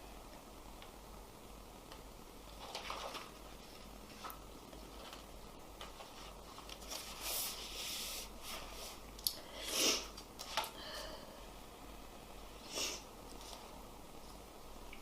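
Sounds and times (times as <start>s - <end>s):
noisy breathing: 7.2s - 13.1s
person sniffing: 9.5s - 10.2s, 12.6s - 13.1s.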